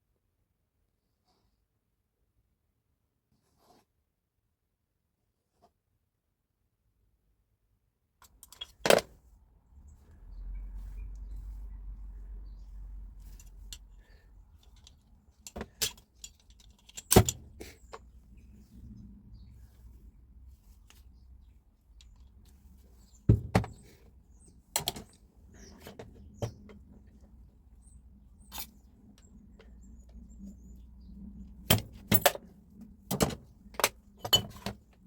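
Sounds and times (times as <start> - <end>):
tools and metal parts clinking: 8.2 - 9.1, 13.2 - 18.0, 24.7 - 26.8, 28.4 - 28.8, 31.6 - 32.5, 33.1 - 34.8.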